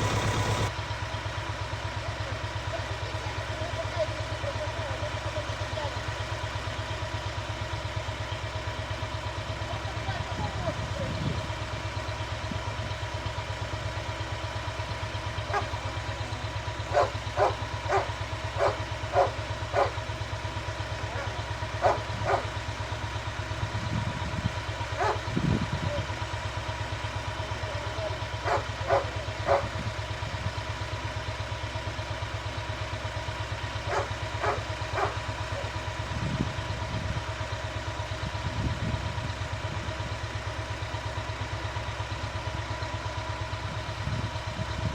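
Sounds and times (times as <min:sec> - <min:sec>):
tiller engine running: 0:00.0 - 0:44.9
dog barking: 0:15.5 - 0:15.8, 0:16.9 - 0:20.0, 0:21.1 - 0:22.6, 0:25.0 - 0:25.3, 0:28.4 - 0:29.8, 0:33.8 - 0:35.7.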